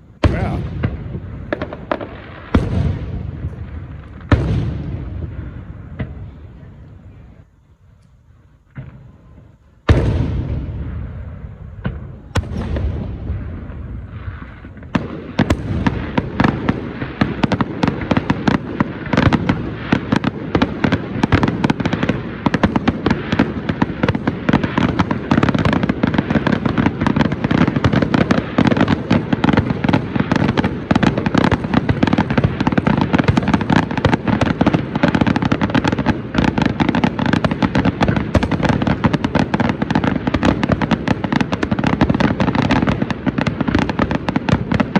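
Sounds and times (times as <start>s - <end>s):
dense crackle of sharp pops: 0.0s - 7.1s, 8.0s - 44.9s.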